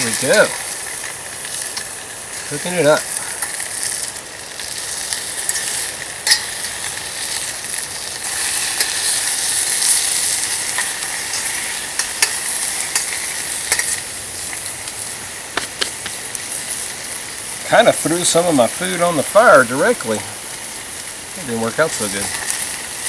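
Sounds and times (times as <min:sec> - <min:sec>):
food sizzling in a pot: 0:00.0 - 0:23.0.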